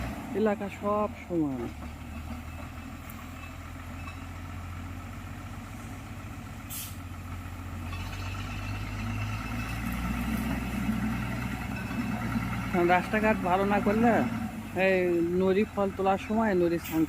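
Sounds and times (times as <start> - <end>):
diesel engine running: 0.0 - 17.0
short hiss: 6.7 - 7.0.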